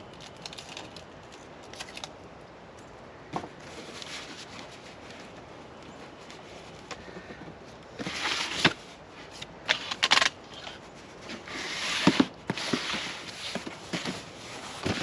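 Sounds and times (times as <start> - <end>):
rustling and scraping: 3.3 - 15.0.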